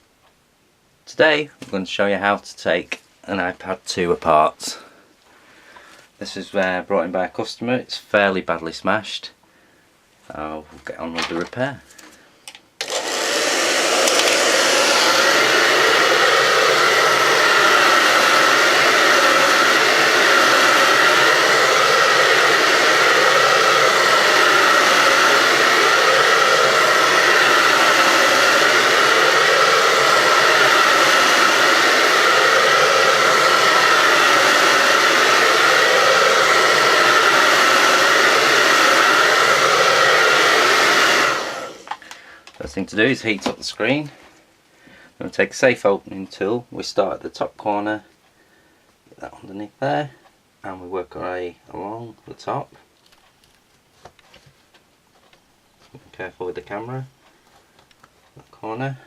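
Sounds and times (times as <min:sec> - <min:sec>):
hot-air blower whining: 0:12.8 - 0:42.5.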